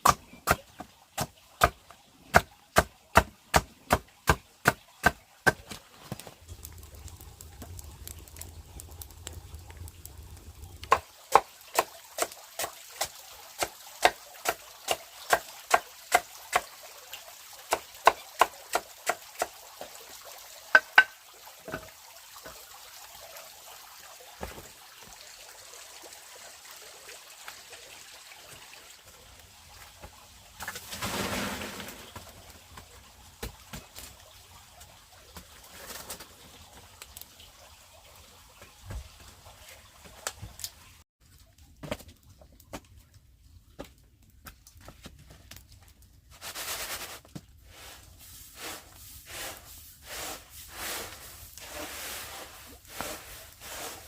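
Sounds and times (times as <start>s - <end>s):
blade chopping wood: 0.0s - 6.2s.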